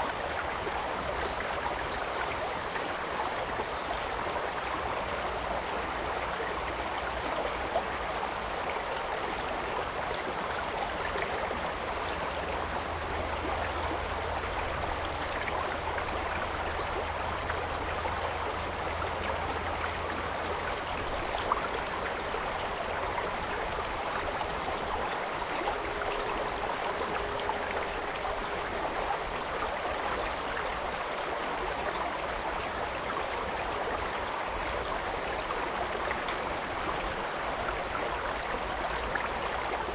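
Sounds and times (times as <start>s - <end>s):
stream water flowing: 0.0s - 39.9s.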